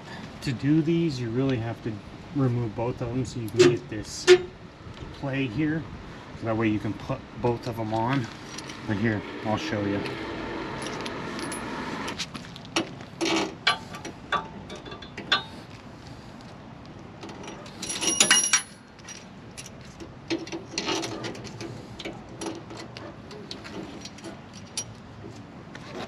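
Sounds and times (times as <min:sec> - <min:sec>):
metal parts clinking: 0:08.3 - 0:08.8, 0:10.8 - 0:11.7, 0:17.2 - 0:21.6, 0:23.5 - 0:25.0
ringing metallic clatter: 0:17.3 - 0:19.8.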